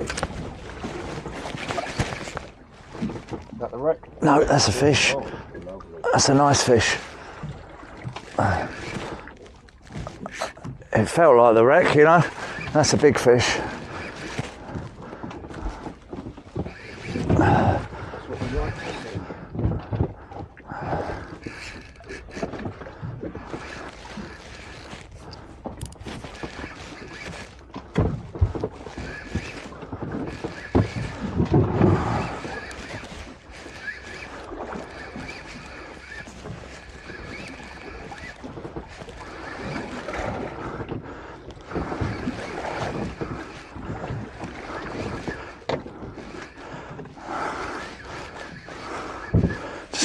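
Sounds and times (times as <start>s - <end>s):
water slapping against hull: 0.0s - 50.0s.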